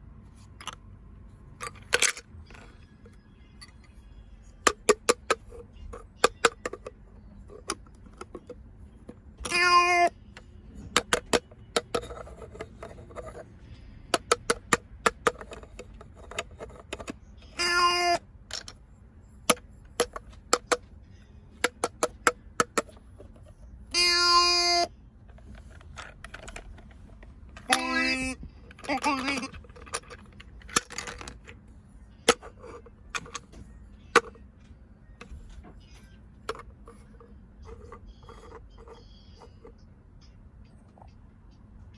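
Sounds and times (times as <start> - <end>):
plastic shapes clacking on toy: 1.5 - 3.9, 4.6 - 13.5, 14.1 - 18.8, 19.5 - 21.0, 21.6 - 31.6, 32.2 - 34.5, 36.4 - 39.8.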